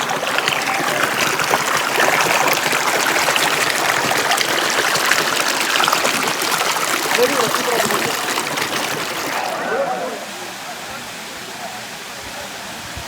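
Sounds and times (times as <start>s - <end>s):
stream rushing over rocks: 0.0s - 12.4s.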